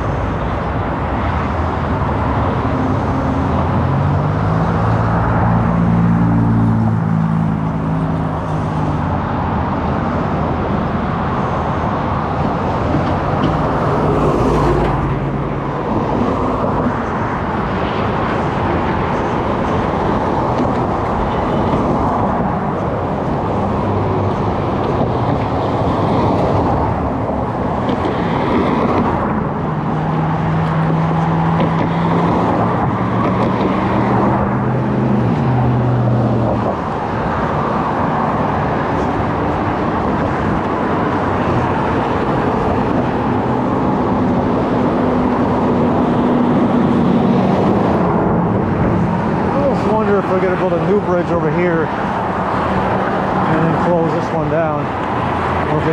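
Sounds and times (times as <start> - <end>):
tyre and road noise: 0.0 - 55.9
car engine hum: 0.4 - 27.9.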